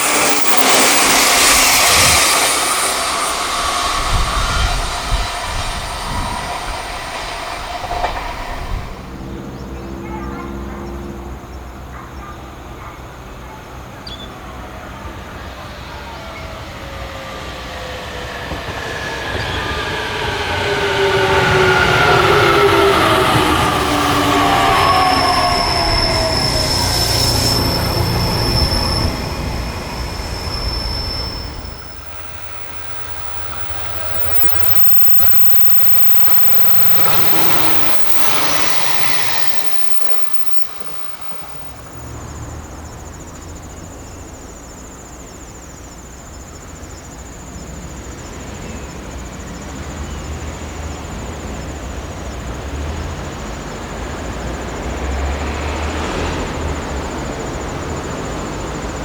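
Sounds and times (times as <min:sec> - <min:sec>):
train motor whine: 0:00.0 - 0:09.7, 0:17.7 - 0:42.7
electric train approaching: 0:00.0 - 0:59.0.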